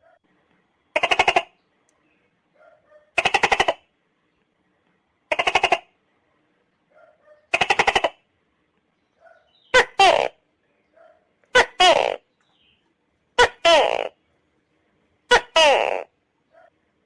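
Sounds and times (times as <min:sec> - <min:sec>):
gecko rattling croaks: 0:05.3 - 0:05.9.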